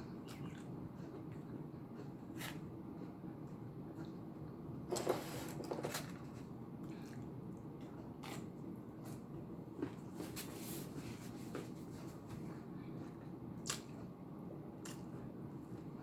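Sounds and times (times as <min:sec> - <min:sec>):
low room hum: 0:00.0 - 0:16.0
person eating: 0:06.0 - 0:10.1.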